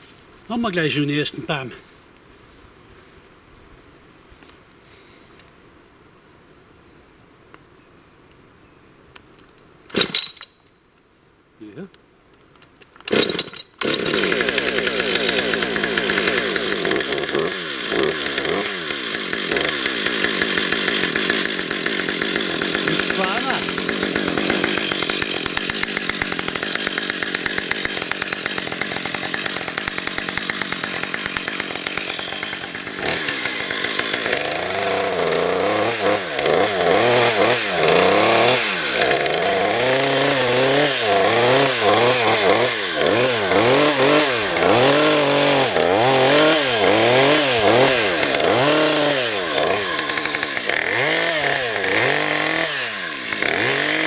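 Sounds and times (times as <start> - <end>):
chainsaw revving: 10.0 - 10.3, 13.1 - 54.0.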